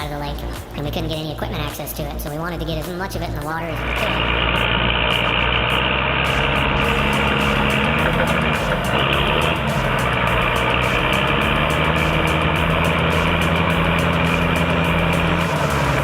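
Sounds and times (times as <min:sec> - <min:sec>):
heavy engine droning: 0:03.8 - 0:16.0.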